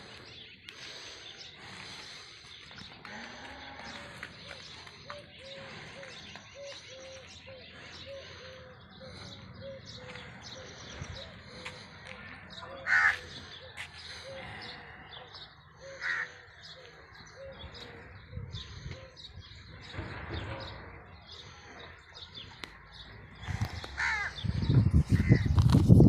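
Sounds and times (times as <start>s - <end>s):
small birds chirping: 0.0s - 26.0s
crows cawing: 12.8s - 15.0s, 15.8s - 18.0s, 23.4s - 24.6s, 25.2s - 25.5s.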